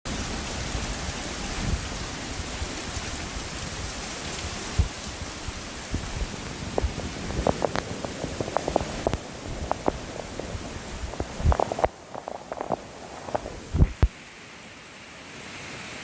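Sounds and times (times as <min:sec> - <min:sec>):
steady rushing water hiss: 0:00.1 - 0:16.0
water gurgling and splashing: 0:02.6 - 0:14.2.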